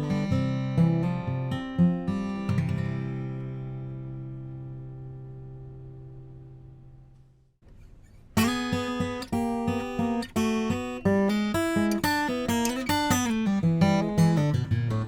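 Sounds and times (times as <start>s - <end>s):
acoustic guitar picking: 0.0s - 15.0s.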